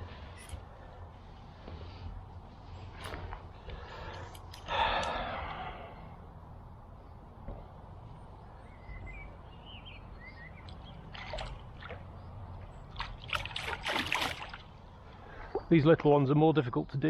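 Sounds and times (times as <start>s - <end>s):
low rumble of wind: 0.0s - 17.0s.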